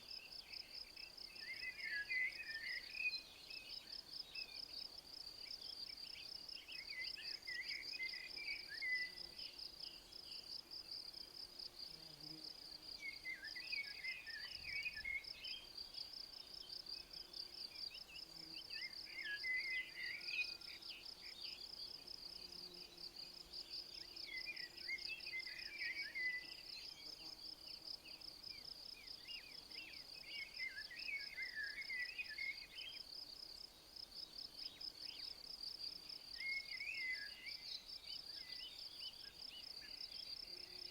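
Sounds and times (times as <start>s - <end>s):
bird singing: 0.0s - 10.5s, 13.0s - 40.9s.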